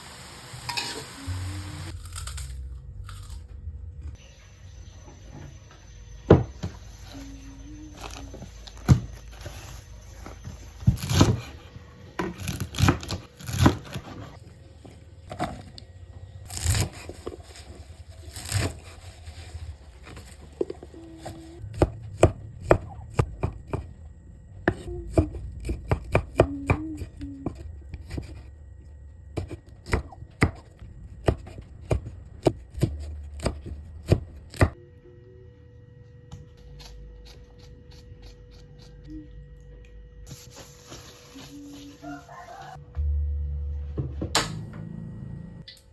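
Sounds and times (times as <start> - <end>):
knife chopping on cutting board: 21.7 - 23.9, 24.7 - 28.4.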